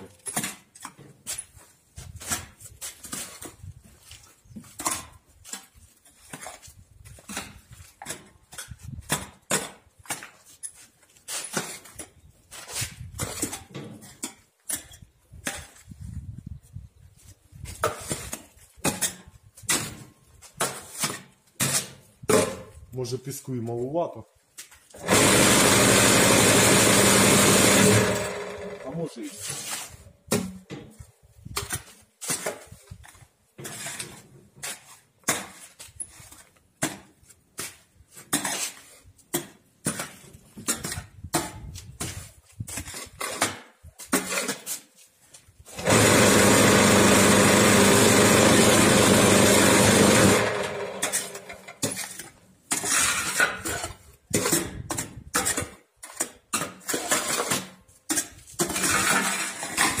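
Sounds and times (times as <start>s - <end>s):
vibrator motor running: 25.0s - 28.9s, 45.8s - 51.0s.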